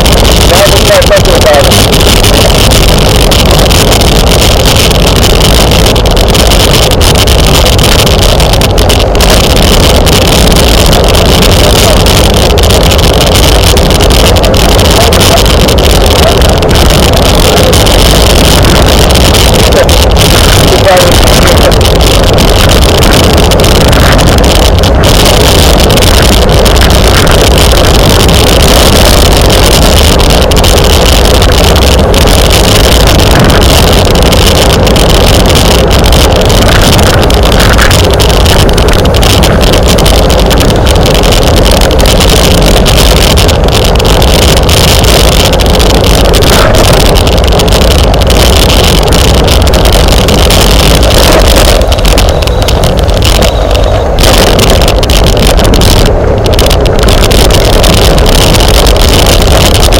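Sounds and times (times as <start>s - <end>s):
wind buffeting microphone: 0.0s - 59.9s.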